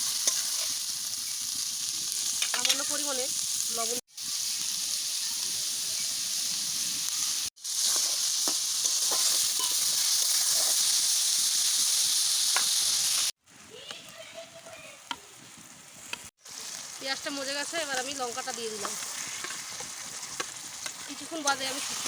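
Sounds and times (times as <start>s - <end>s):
onions sizzling in hot oil: 0.0s - 22.0s.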